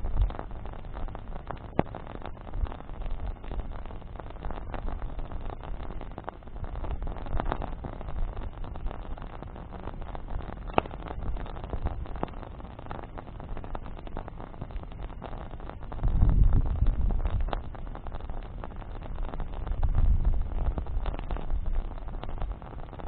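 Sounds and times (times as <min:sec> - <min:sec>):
campfire crackling and snapping: 0:00.0 - 0:23.0
fire pop: 0:00.0 - 0:23.0
low rumble: 0:15.9 - 0:17.6.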